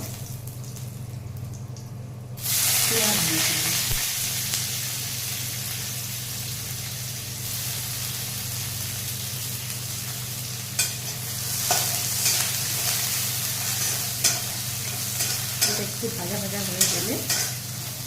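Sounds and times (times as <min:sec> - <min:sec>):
onion sizzling in hot oil: 0:02.4 - 0:18.0.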